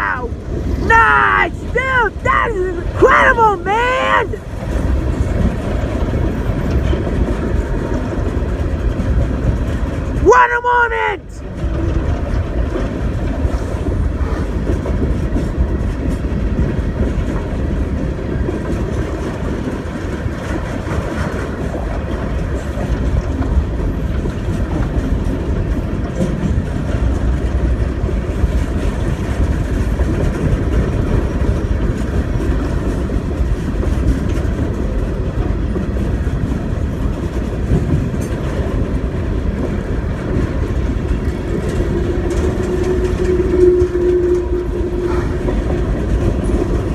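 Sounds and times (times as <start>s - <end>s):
train cars rolling past: 0.0s - 10.3s, 11.4s - 46.9s
wheels clicking over rail joints: 1.5s - 10.3s, 11.4s - 46.9s
steady tone: 43.0s - 46.4s.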